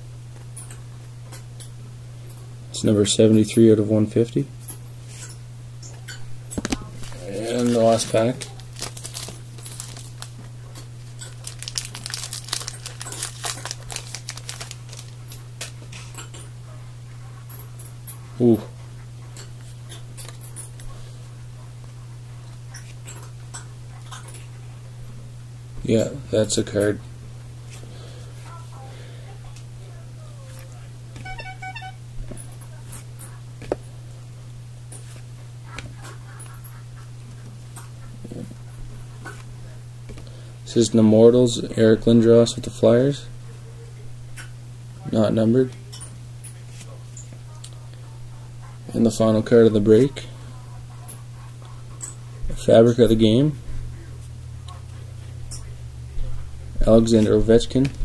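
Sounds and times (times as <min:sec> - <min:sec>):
steady low hum: 0:00.0 - 0:58.0
cards shuffling: 0:06.6 - 0:16.1
wrapper crinkling and tearing: 0:07.0 - 0:10.4, 0:11.0 - 0:16.1.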